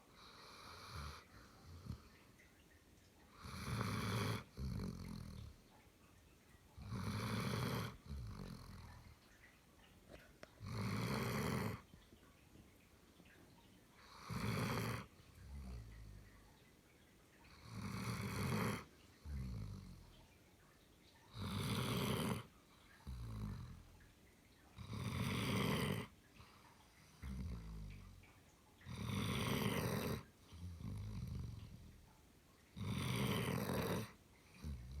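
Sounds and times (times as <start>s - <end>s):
dog snoring: 0.1s - 2.1s, 3.3s - 5.6s, 6.8s - 9.2s, 10.6s - 11.9s, 14.0s - 16.3s, 17.5s - 20.2s, 21.3s - 23.9s, 24.8s - 28.2s, 28.8s - 32.0s, 32.8s - 35.0s.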